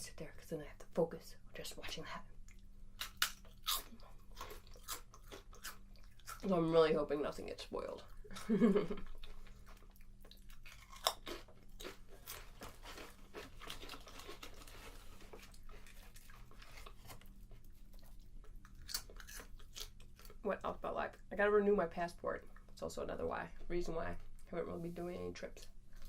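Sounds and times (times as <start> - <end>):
person chewing crunchy chips: 3.0 - 6.6, 9.0 - 20.4.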